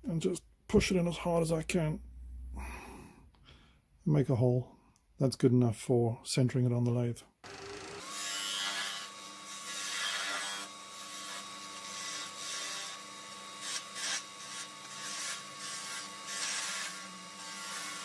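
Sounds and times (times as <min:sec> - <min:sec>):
tool rasping wood: 0:07.7 - 0:18.0.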